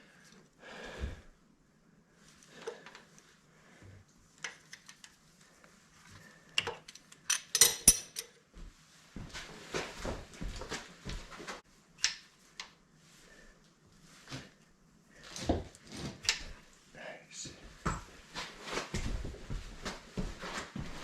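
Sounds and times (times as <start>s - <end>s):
small steel parts clinking: 6.6s - 8.4s.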